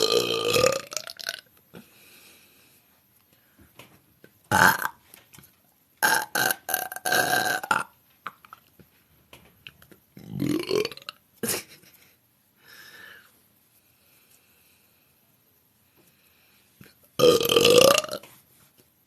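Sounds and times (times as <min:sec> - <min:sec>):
woman belching: 0:00.0 - 0:01.4, 0:04.5 - 0:04.9, 0:06.0 - 0:08.4, 0:10.2 - 0:11.2, 0:17.2 - 0:18.2.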